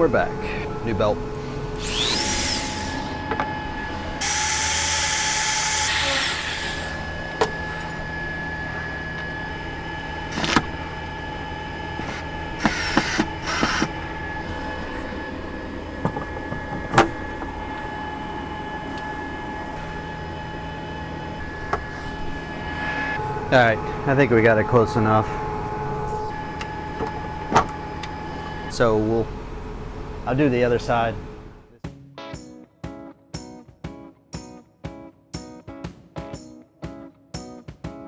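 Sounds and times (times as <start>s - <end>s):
steady hum: 0.0s - 30.6s
belt sander running: 1.8s - 23.2s, 26.3s - 28.8s.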